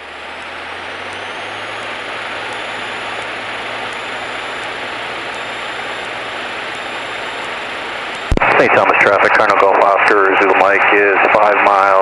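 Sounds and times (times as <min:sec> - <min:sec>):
propeller plane engine running: 0:00.0 - 0:12.0.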